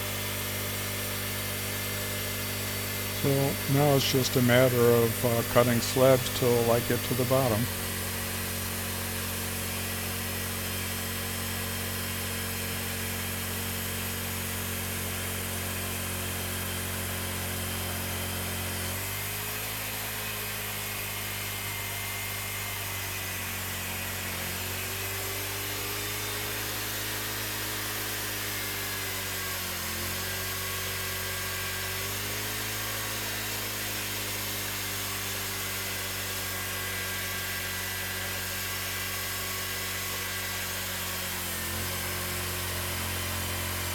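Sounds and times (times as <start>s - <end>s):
band sawmill sawing log: 0.0s - 9.2s, 23.7s - 43.9s.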